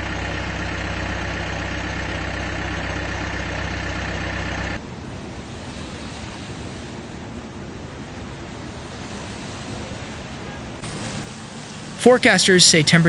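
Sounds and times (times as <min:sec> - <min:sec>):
vehicle engine idling: 0:00.0 - 0:12.9
wind hiss on microphone: 0:05.0 - 0:12.0.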